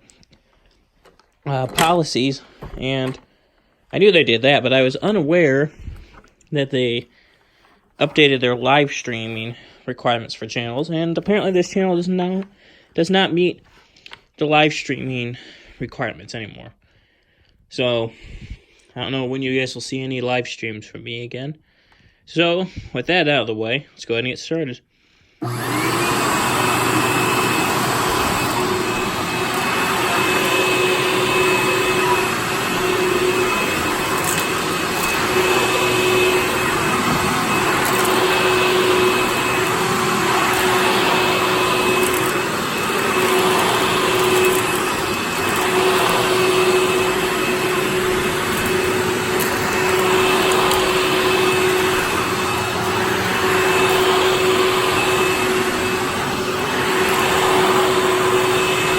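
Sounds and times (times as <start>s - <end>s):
vacuum cleaner running: 1.0s - 6.1s, 25.4s - 58.9s.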